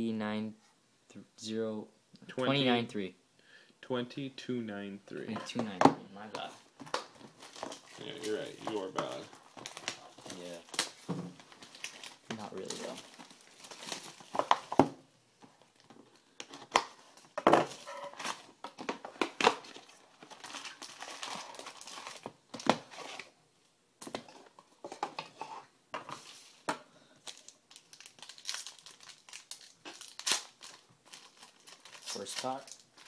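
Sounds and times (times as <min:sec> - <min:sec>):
plastic and foil packaging crinkling: 0:06.4 - 0:14.8, 0:15.5 - 0:23.4, 0:26.2 - 0:33.0.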